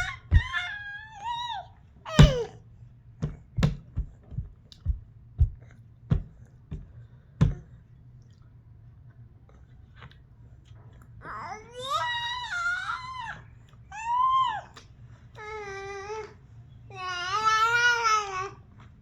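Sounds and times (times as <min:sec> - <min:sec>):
baby whining: 0:00.0 - 0:02.6, 0:11.2 - 0:14.8, 0:15.4 - 0:18.6.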